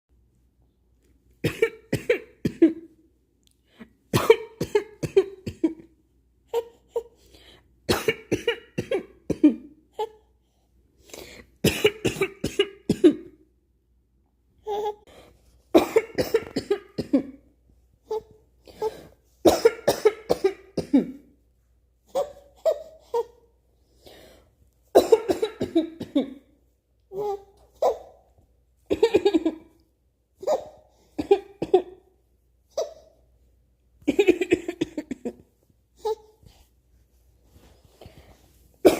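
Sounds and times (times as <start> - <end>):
person coughing: 1.4 - 3.0, 4.1 - 6.0, 7.9 - 10.1, 11.6 - 13.4, 15.8 - 17.4, 18.7 - 21.3, 25.0 - 26.5, 28.9 - 29.7, 31.2 - 32.0, 34.1 - 35.5.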